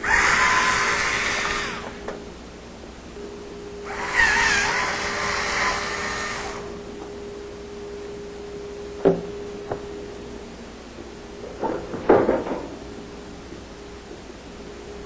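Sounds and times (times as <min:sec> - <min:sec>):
power screwdriver whirring: 0:00.0 - 0:02.0, 0:03.9 - 0:06.8.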